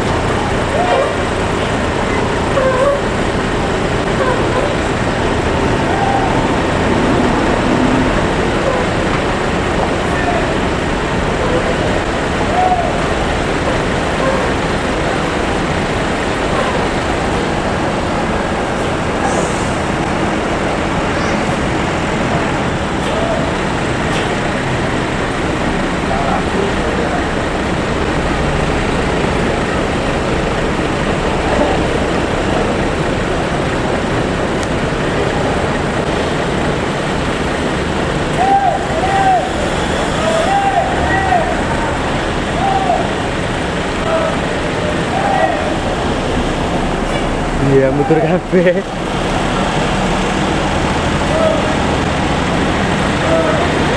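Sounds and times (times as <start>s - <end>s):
road traffic noise: 0.0s - 53.9s.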